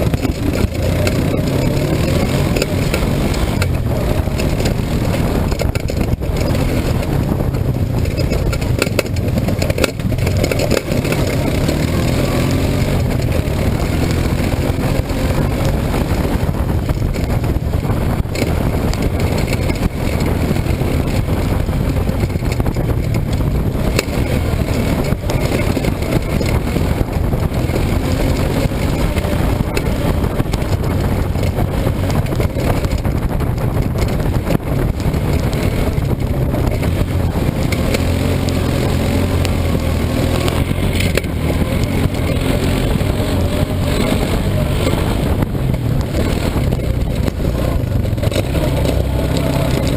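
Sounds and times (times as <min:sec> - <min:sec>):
vehicle engine driving: 0:00.0 - 0:49.9.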